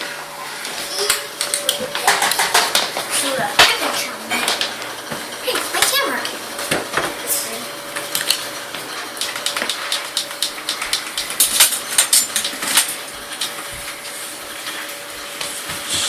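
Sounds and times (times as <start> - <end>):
toy dishes clattering: 1.5 - 3.0.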